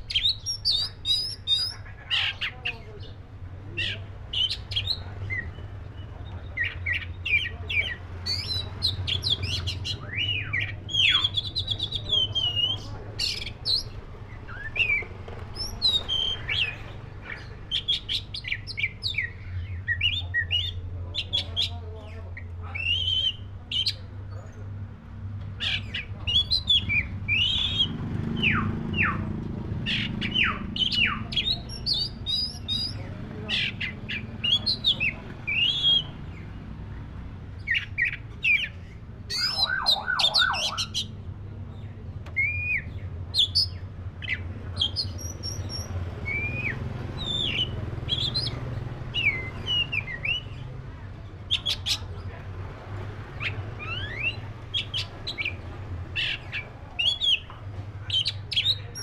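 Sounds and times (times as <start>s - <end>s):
bird singing whistles: 39.3s - 41.0s, 42.4s - 50.5s.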